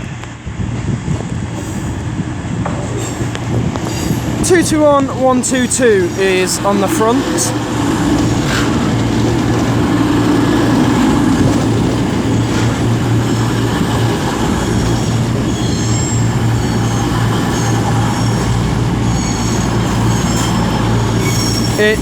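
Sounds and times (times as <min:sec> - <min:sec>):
train coaches rumbling: 0:00.0 - 0:22.0
diesel engines humming: 0:00.1 - 0:22.0
wheel and brake squeals: 0:06.1 - 0:22.0.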